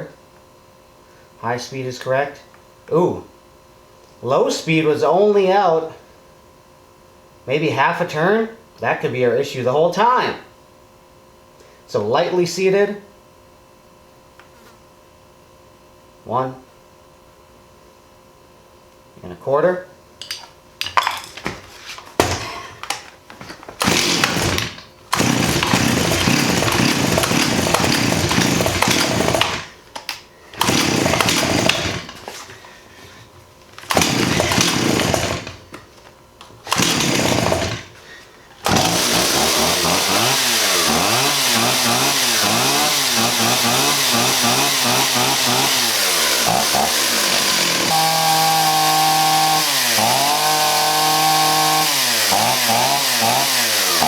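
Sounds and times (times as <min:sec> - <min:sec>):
chainsaw sputtering and revving: 0:23.8 - 0:29.8, 0:30.6 - 0:32.2, 0:33.8 - 0:35.6, 0:36.7 - 0:38.0, 0:38.6 - 0:54.0.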